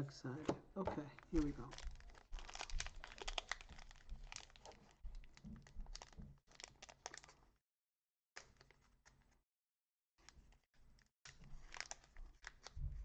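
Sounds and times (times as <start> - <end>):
foil wrapper crinkling and tearing: 1.1 - 7.5, 8.4 - 9.2, 11.3 - 12.8.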